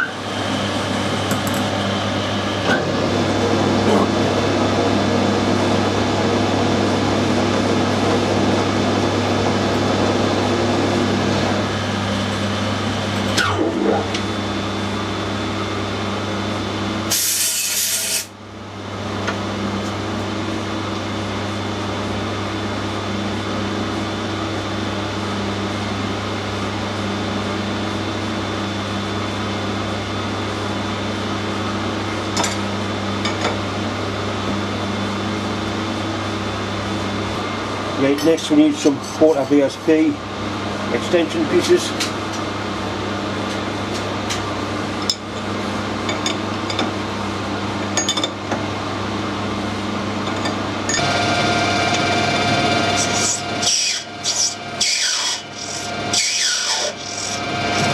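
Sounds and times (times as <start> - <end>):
hiss-like burst: 17.1 - 18.3
machine tool cutting brass: 17.1 - 18.3, 52.9 - 57.9.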